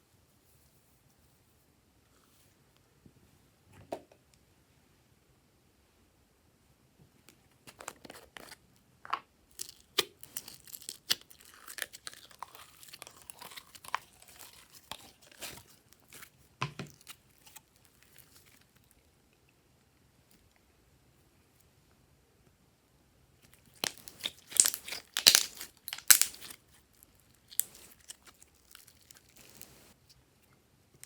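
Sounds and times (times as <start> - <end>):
slime popping and crackling: 9.5 - 15.8, 23.5 - 30.0
slime squelch: 23.5 - 30.0.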